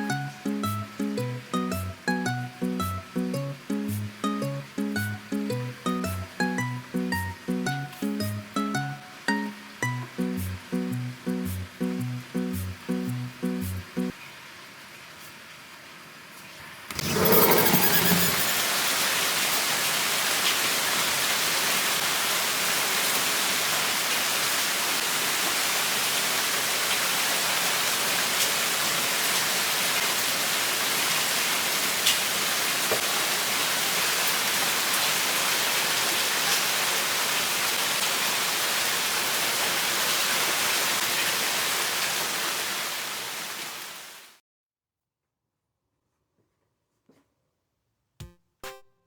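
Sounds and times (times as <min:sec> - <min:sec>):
heavy rain hissing: 0:07.0 - 0:14.1, 0:17.2 - 0:44.3.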